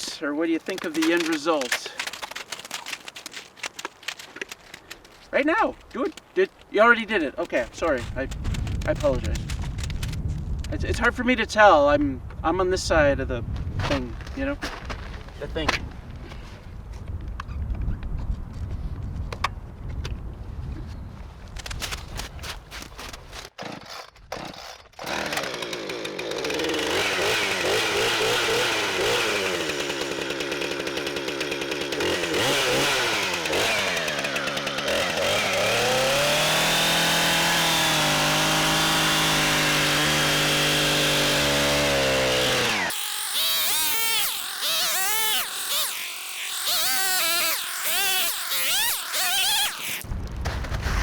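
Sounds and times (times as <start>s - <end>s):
chainsaw cutting ice: 0.6s - 6.2s, 7.0s - 10.2s, 22.7s - 50.1s.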